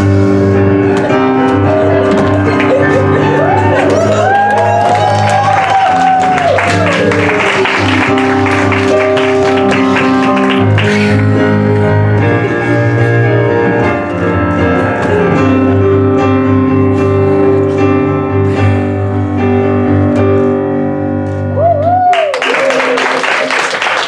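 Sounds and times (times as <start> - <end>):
piano playing chords and melody: 0.0 - 22.1
audience applause: 2.0 - 11.6, 21.7 - 24.0.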